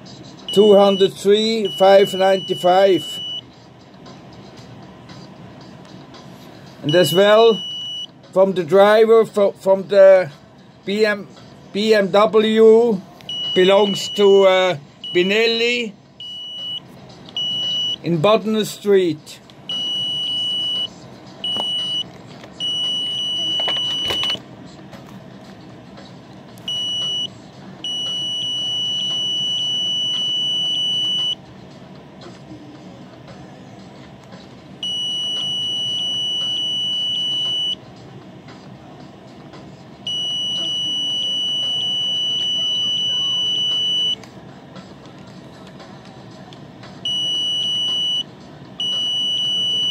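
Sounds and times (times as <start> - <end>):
high-pitched electronic detector tone: 0.5 - 3.4, 6.9 - 8.1, 22.6 - 24.4, 27.9 - 31.4, 34.8 - 37.8, 40.1 - 44.2, 47.1 - 48.2, 48.8 - 49.9.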